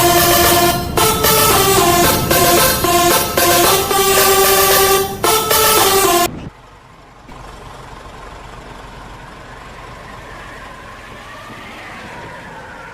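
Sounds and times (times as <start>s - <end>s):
loud multi-note pitched sound: 0.0s - 6.3s
bus engine and road noise: 0.0s - 12.9s.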